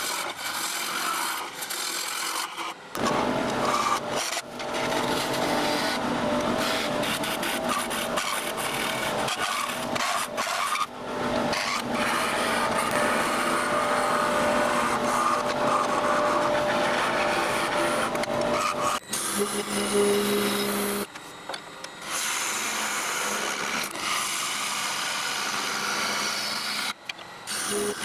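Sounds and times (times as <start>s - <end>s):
tool scraping spinning wood: 0.0s - 21.1s, 22.0s - 28.0s
wood lathe spinning: 0.0s - 21.1s, 22.0s - 28.0s.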